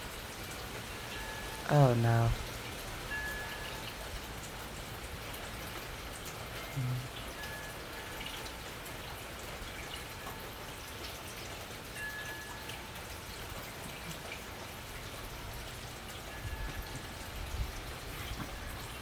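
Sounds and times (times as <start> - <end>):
drops dripping and pattering: 0.0 - 19.0
rain falling: 0.0 - 19.0
low wind gusts: 15.5 - 19.0.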